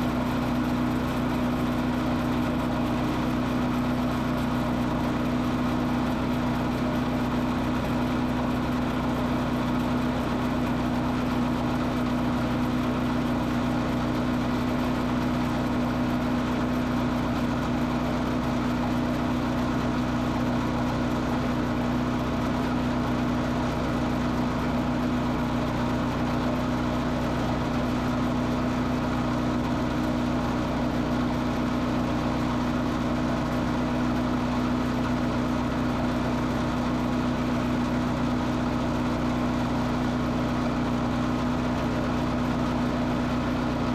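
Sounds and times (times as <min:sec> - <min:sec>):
heavy equipment engine droning: 0:00.0 - 0:43.9.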